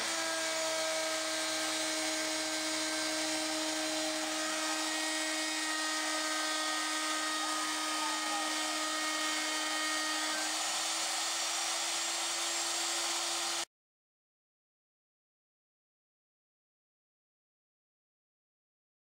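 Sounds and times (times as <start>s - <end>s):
router spindle whining: 0.0s - 13.7s.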